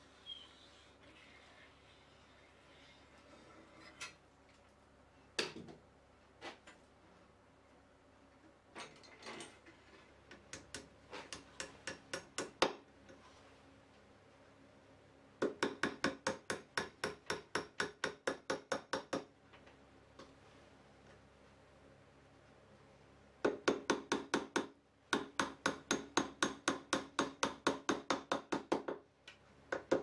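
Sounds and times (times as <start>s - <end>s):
hammer tapping on wood: 15.4s - 19.3s, 23.5s - 29.0s.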